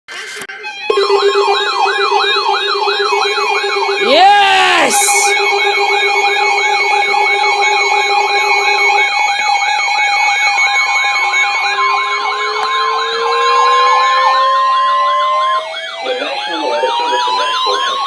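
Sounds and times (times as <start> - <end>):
steady high alarm tone: 5.2 - 18.0
warbling siren-like tone: 10.0 - 17.7.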